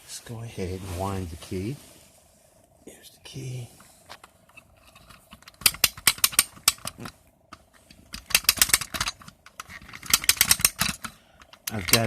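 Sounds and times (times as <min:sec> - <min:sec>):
wind-up toy ratchet clicks: 0:08.2 - 0:12.0.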